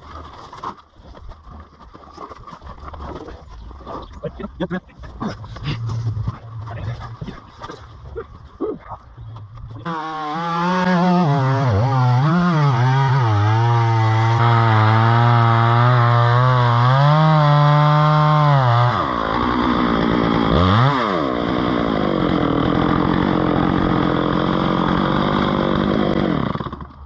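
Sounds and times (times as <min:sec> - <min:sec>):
chainsaw running and cutting: 0:09.8 - 0:27.0.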